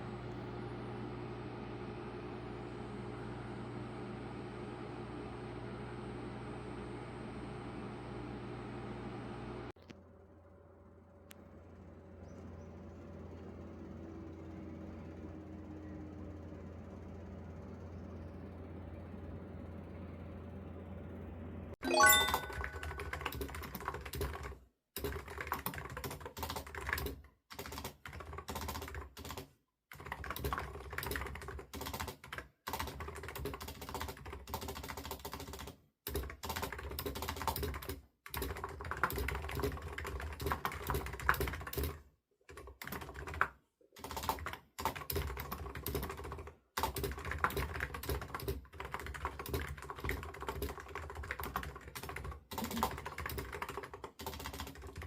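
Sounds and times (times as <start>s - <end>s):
typing on computer keyboard: 22.0s - 55.0s.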